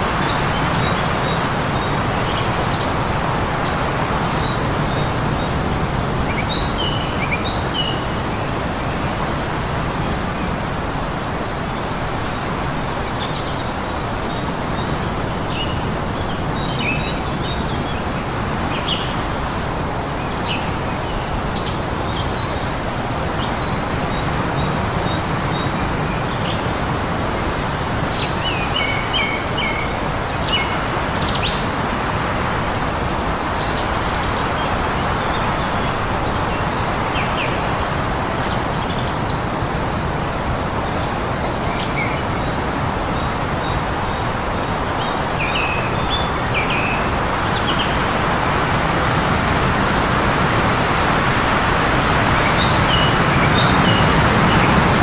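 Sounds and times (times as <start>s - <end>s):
heavy wind blowing: 0.0s - 55.0s
small birds chirping: 20.2s - 55.0s.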